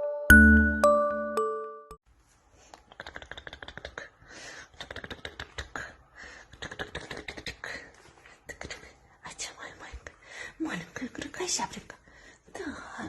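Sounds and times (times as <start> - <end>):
chime tone: 0.0 - 2.0.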